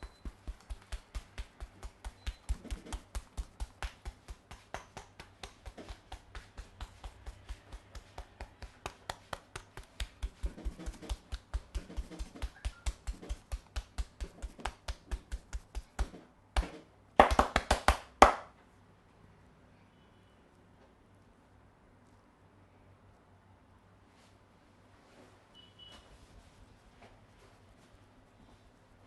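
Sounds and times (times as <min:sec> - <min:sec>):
hands tapping on head: 0:00.0 - 0:18.5.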